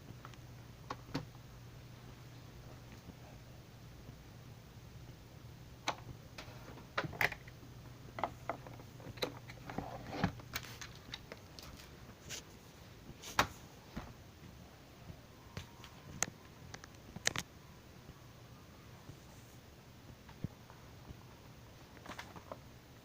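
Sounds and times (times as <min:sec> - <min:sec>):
steady low hum: 0:00.0 - 0:23.0.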